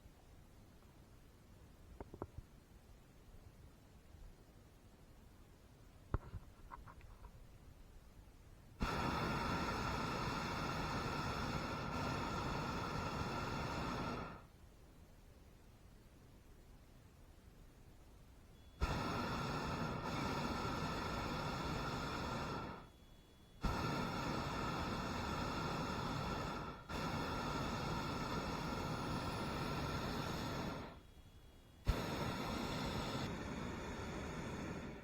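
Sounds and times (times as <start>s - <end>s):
propane burner roaring: 8.8s - 14.5s, 18.8s - 22.9s, 23.6s - 31.0s, 31.8s - 35.0s.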